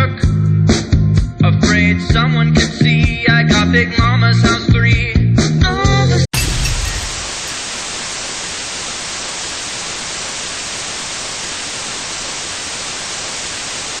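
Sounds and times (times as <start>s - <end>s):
static hiss: 6.6s - 14.0s.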